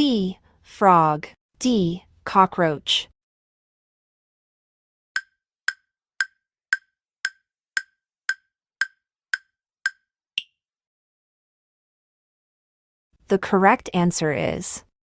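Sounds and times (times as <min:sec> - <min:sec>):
countdown timer ticking: 0:05.2 - 0:10.5.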